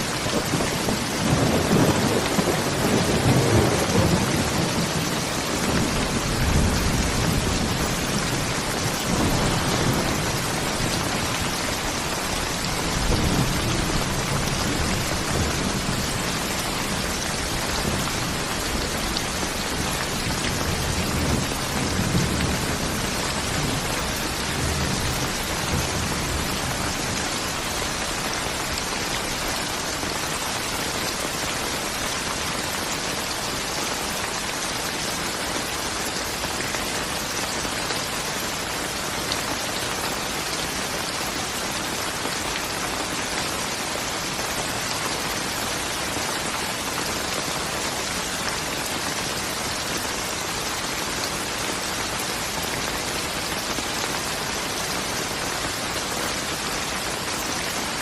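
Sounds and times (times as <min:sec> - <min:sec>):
steady rain falling: 0:00.0 - 0:58.0
low rolling thunder: 0:00.4 - 0:27.8.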